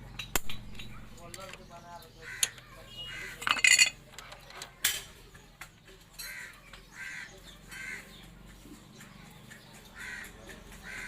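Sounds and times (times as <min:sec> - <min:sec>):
metal tools clinking: 0:00.0 - 0:01.7, 0:03.3 - 0:05.2
bird calling: 0:00.9 - 0:03.6, 0:09.5 - 0:11.0.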